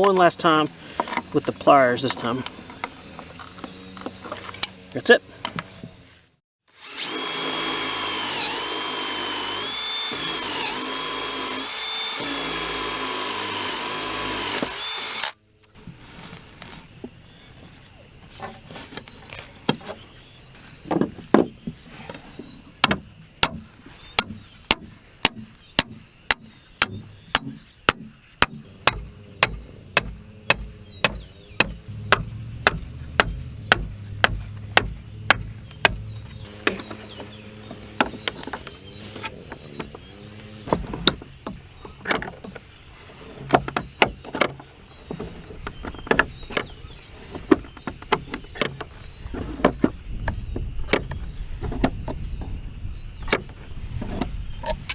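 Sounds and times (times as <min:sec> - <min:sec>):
power drill bogging under load: 0:06.8 - 0:15.4.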